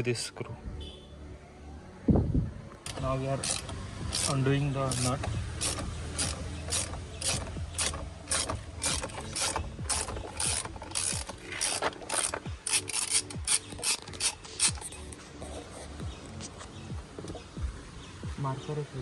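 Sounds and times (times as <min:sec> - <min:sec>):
ratchet wrench clicking: 0:02.9 - 0:15.0.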